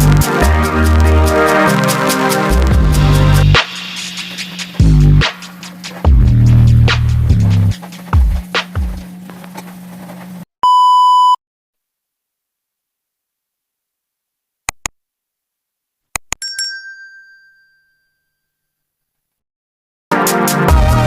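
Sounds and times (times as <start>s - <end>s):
short electronic beep: 10.6s - 11.4s
sharp clicks: 14.7s - 15.0s
bright ringing ding: 16.4s - 18.6s.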